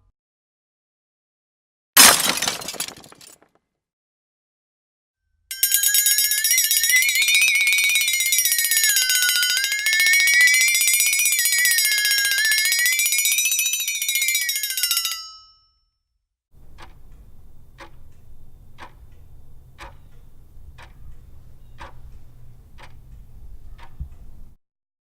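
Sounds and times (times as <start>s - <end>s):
clock ticking: 6.7s - 13.9s, 16.6s - 24.6s.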